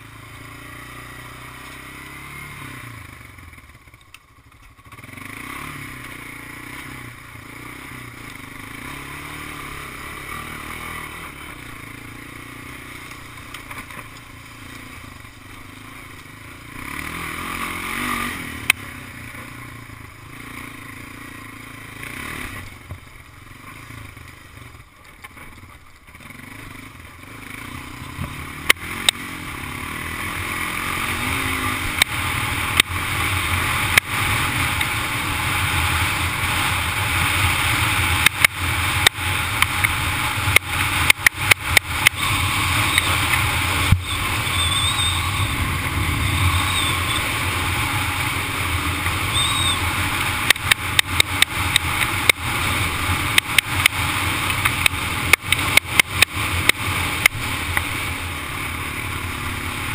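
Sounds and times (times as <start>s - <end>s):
atv engine running: 0.0s - 59.9s
steady noise: 26.6s - 59.9s.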